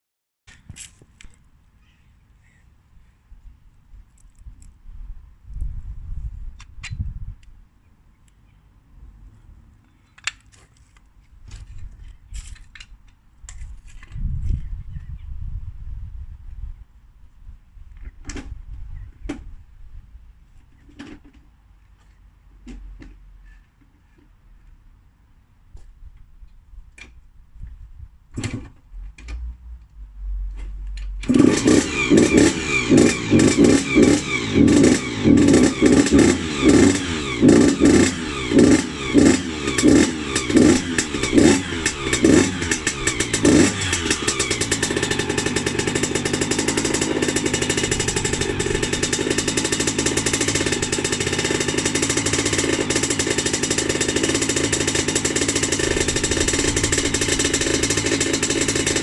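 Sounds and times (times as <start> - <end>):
two-stroke engine revving: 31.2 - 59.0.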